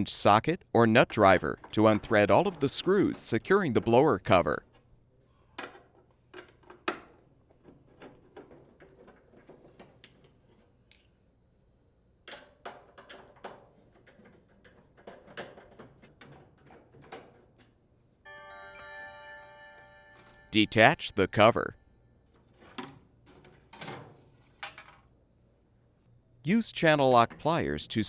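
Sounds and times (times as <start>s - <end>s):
ringing chime-like tone: 18.3s - 22.3s.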